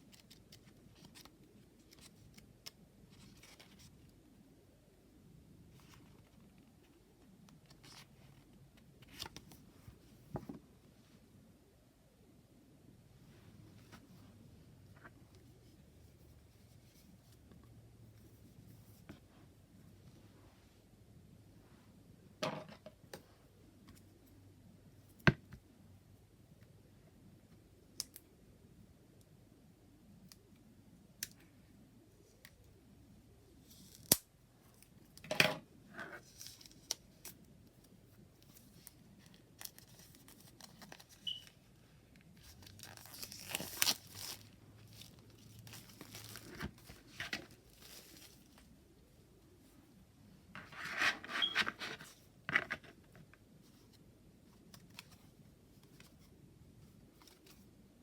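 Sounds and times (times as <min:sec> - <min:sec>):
paper packaging rustling: 0:42.4 - 0:48.7.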